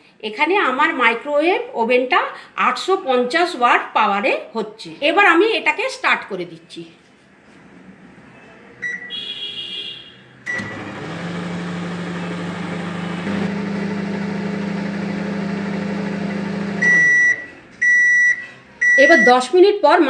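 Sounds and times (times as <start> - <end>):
keypad beeps: 8.8 - 9.1, 16.8 - 19.4
microwave running hum: 10.5 - 17.4
long loud beep: 16.8 - 19.4.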